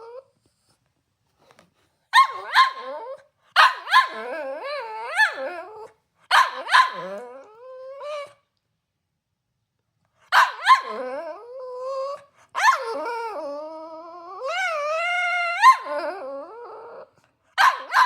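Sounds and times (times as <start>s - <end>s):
dog whining: 0.0s - 0.3s, 2.2s - 8.4s, 10.4s - 17.3s
dog barking: 2.2s - 3.0s, 3.6s - 4.2s, 6.3s - 7.2s, 10.3s - 11.0s, 17.6s - 18.0s.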